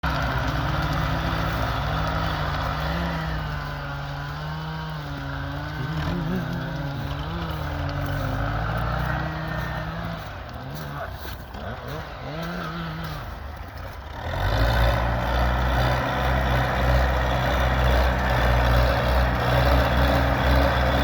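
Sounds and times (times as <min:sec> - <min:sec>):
tractor diesel engine under load: 0:00.0 - 0:21.0.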